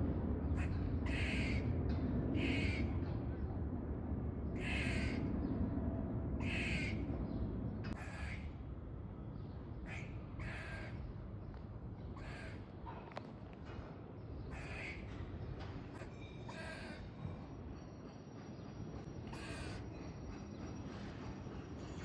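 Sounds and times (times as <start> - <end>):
squirrel warning calls: 0.5 - 1.8, 2.4 - 3.0, 4.6 - 5.3, 6.4 - 7.1, 7.9 - 8.6, 9.8 - 11.2, 12.1 - 12.8, 14.4 - 17.2, 19.2 - 20.7.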